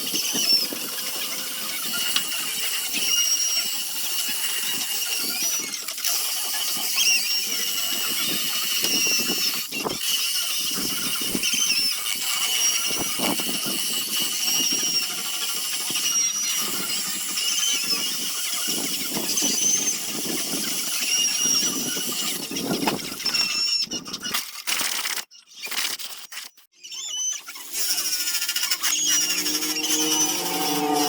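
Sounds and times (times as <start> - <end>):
abrasive rasping on wood: 27.7 - 31.0
power sander whining: 28.8 - 31.0.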